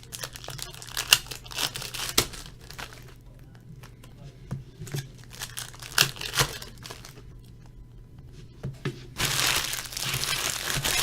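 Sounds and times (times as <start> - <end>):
plastic packaging crinkling: 0.0 - 4.0, 4.8 - 7.7, 9.2 - 11.0.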